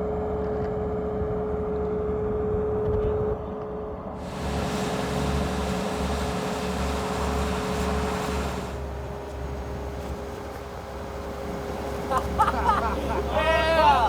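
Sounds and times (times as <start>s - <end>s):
low machine rumble: 0.0s - 14.0s
rushing noise: 4.2s - 14.0s.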